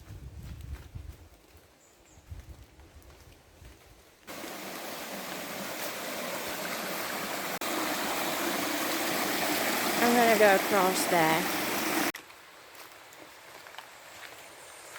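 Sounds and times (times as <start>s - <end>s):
stream rushing over rocks: 4.3s - 12.2s.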